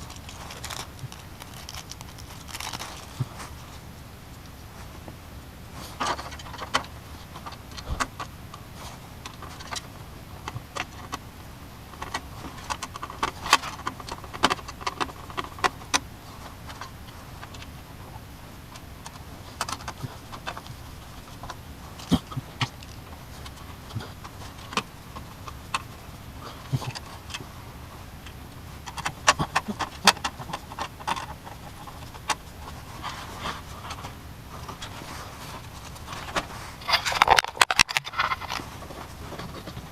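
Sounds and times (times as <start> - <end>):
computer parts clicking and rattling: 28.2 - 34.1, 35.6 - 39.9.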